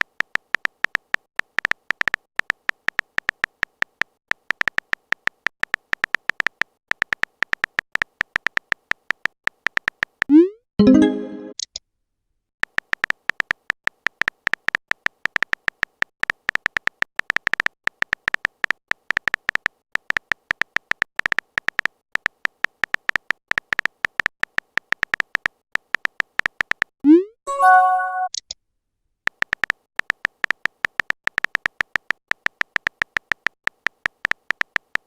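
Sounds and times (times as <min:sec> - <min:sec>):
brief chime: 0:27.5 - 0:28.4
phone keyboard typing clicks: 0:29.3 - 0:35.0.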